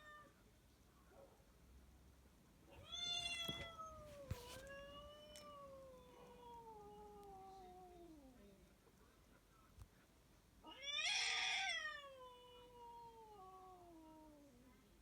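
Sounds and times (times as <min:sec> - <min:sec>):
recorded cat meowing: 0:02.7 - 0:08.4, 0:10.6 - 0:14.6.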